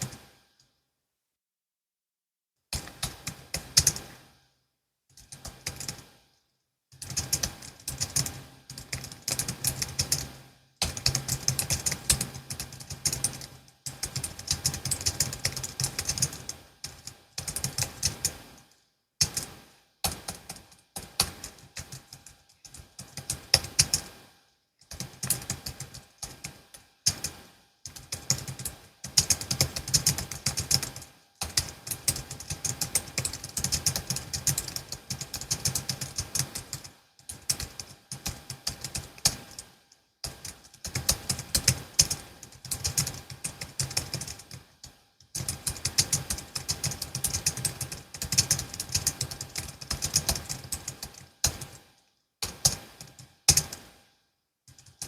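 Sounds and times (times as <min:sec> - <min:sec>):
fast typing on keyboard: 0:02.8 - 0:04.2, 0:05.2 - 0:06.1, 0:07.0 - 0:18.6, 0:19.2 - 0:24.1, 0:24.8 - 0:51.8, 0:52.4 - 0:53.9, 0:54.7 - 0:55.0.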